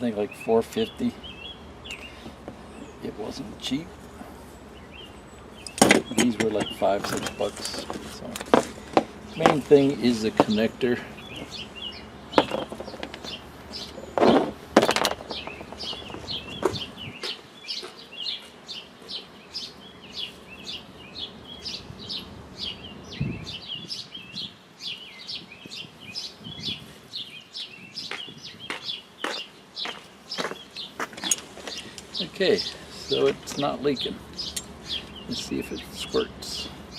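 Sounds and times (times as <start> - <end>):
small bird chirping: 0.2 - 14.4, 15.1 - 36.9
sharp knocks: 12.3 - 13.4.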